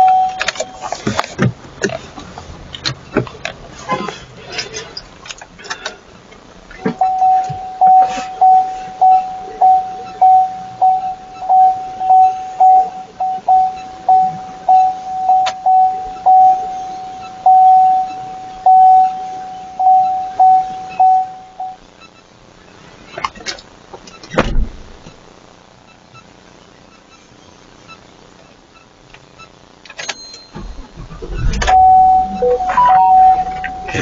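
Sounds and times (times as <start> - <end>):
electronic chime beeping: 0.0 - 0.8, 7.0 - 21.8, 31.7 - 34.0.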